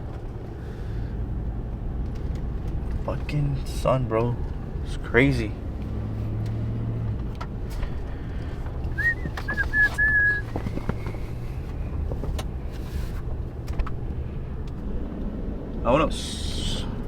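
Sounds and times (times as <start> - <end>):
car driving drone from inside: 1.0 - 17.0
high whistle-like notes: 9.0 - 10.4.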